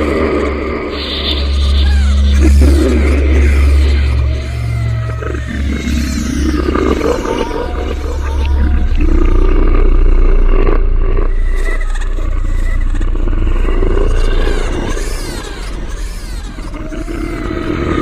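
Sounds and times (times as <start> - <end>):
deep drone: 0.0 - 18.0
monstrous roaring growl: 0.0 - 18.0.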